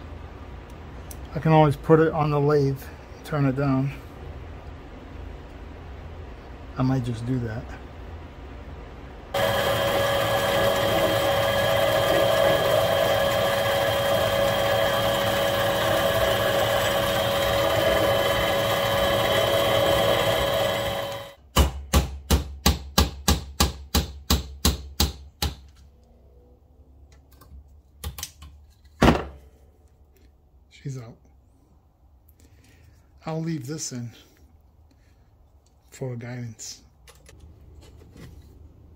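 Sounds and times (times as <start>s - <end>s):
metal lathe running: 9.4s - 21.4s.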